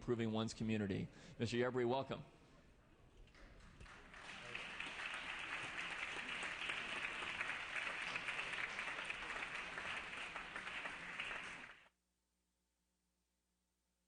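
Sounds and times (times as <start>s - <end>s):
crowd applauding: 3.4s - 11.9s.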